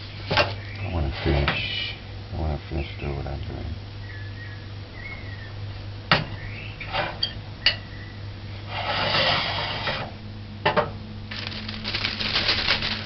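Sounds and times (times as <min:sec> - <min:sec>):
rubbing scrape: 0:08.7 - 0:10.0.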